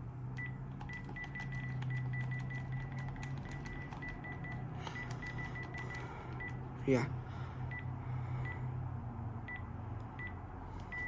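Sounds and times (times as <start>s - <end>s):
steady low hum: 0.0s - 11.0s
keypad clicks: 0.4s - 6.8s.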